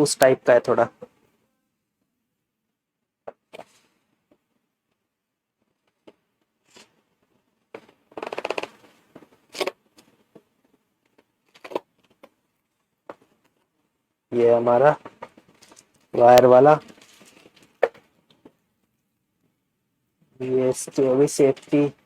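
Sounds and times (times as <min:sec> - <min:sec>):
crackling rattle: 0:07.7 - 0:12.3, 0:14.8 - 0:18.5.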